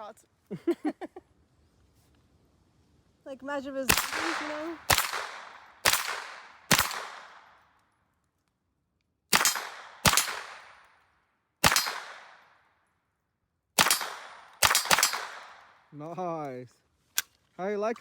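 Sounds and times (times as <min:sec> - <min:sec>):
gunshots echoing: 0:03.9 - 0:07.6, 0:09.3 - 0:10.9, 0:11.6 - 0:12.6, 0:13.8 - 0:15.8.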